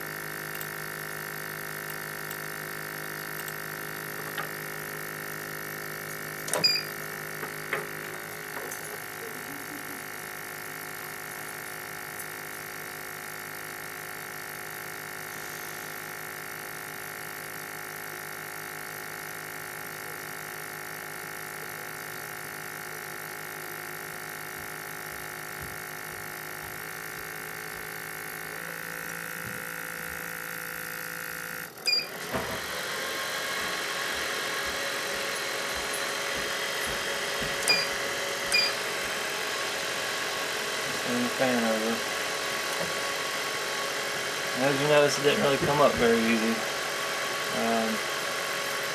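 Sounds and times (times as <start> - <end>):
machine fans whirring hum: 31.7 - 48.9.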